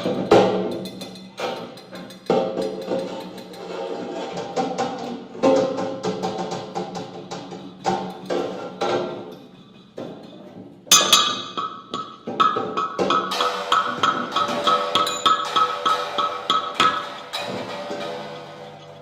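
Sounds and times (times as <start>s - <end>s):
struck percussion notes ringing: 10.9s - 19.0s.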